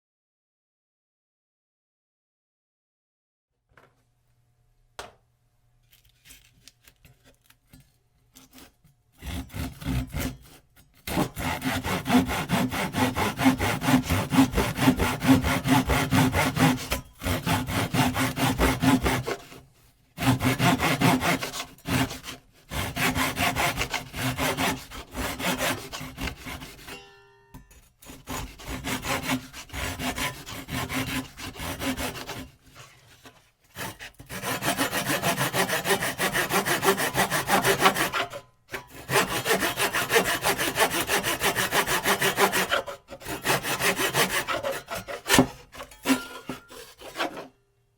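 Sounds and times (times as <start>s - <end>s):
hand saw sawing: 8.4s - 27.0s, 28.0s - 47.6s.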